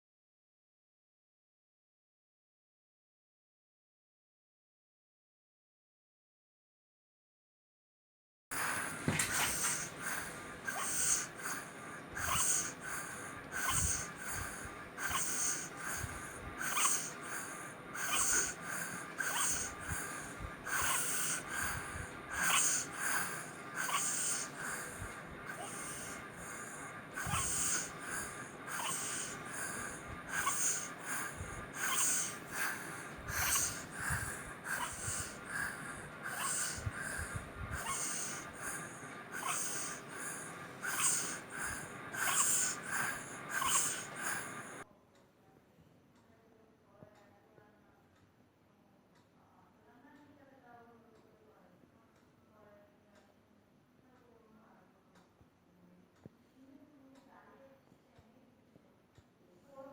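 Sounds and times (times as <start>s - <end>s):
person breathing with wheezy rasp: 8.5s - 44.8s.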